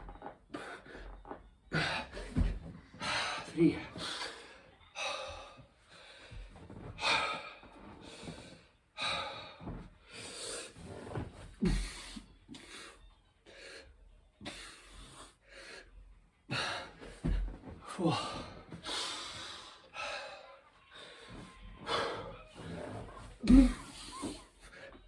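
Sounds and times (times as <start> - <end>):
man breathing heavily: 0.5 - 25.0
body thumping on floor: 2.1 - 2.9, 17.0 - 17.8.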